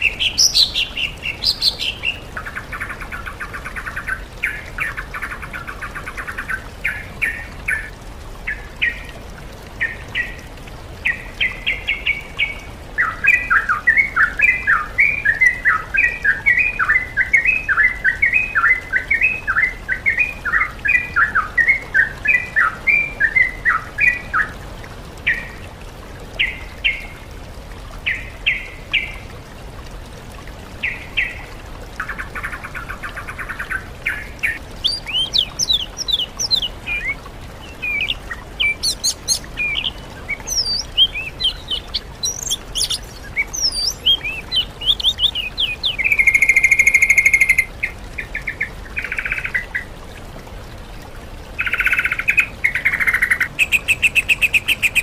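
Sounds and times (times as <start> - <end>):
songbird song: 0.0 - 27.3, 27.9 - 29.4, 30.4 - 50.0, 51.5 - 55.0.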